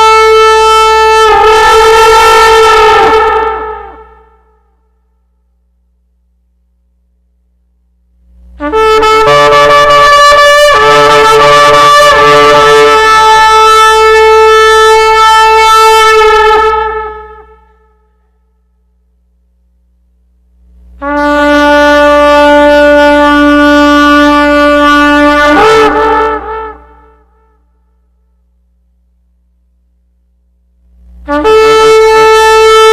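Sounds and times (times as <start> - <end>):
horn blasts: 0.0 - 5.0, 8.5 - 18.4, 21.0 - 28.3, 31.2 - 32.9.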